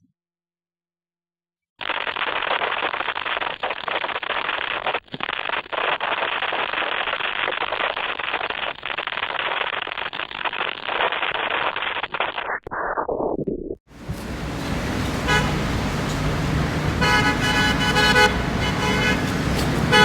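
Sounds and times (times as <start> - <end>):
crackle of small pops: 1.8 - 12.7.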